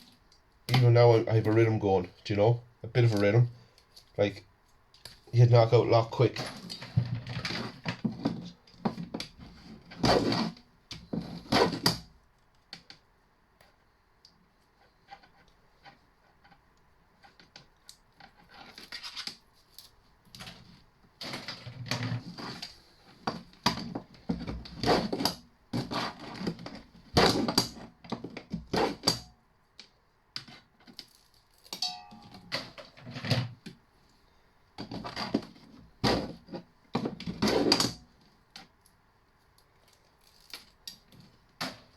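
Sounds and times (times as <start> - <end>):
knife scraping and cutting cable: 6.4 - 12.0, 14.8 - 16.6, 17.2 - 29.3, 34.8 - 38.0.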